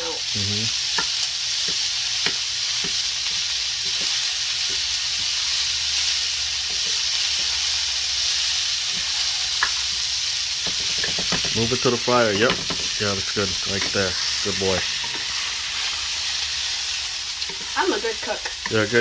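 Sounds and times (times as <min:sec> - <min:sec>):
food sizzling in a frying pan: 0:00.0 - 0:19.0
utensil tapping a pan: 0:10.6 - 0:11.7, 0:12.3 - 0:13.0.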